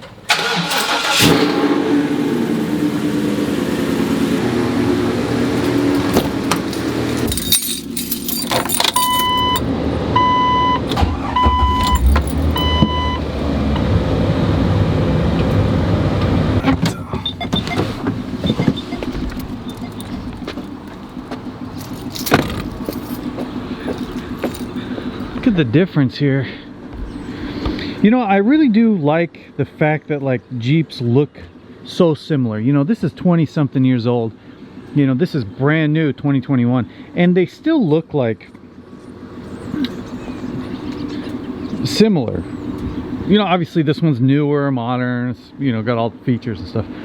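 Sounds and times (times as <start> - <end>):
car engine starting and running: 0.0 - 26.0, 26.6 - 28.1, 39.0 - 43.4
vehicle warning chime beeping: 8.7 - 13.4, 16.6 - 25.4.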